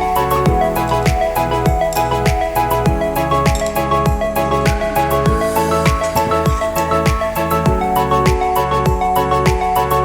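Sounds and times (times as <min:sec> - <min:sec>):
upbeat instrumental music: 0:00.0 - 0:10.0.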